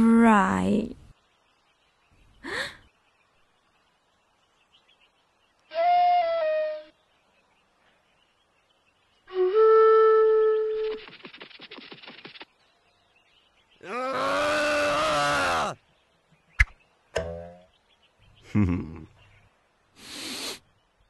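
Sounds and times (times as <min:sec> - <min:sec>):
held flute-like notes: 0:05.7 - 0:07.0, 0:09.3 - 0:11.0.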